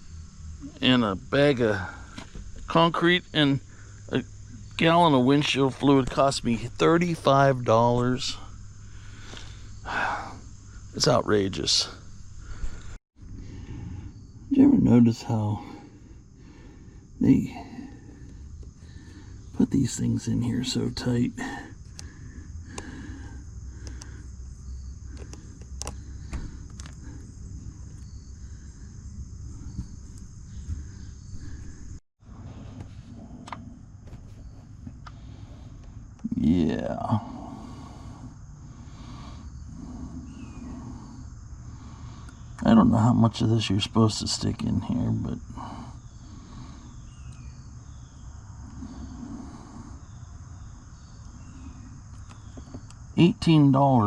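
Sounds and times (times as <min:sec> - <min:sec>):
high insect chirping: 0:00.0 - 0:54.0
faint clicks: 0:23.8 - 0:24.2.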